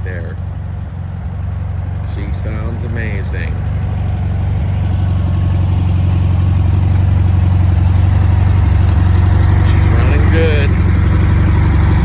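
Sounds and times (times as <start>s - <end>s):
car engine running at low revs: 0.0s - 12.0s.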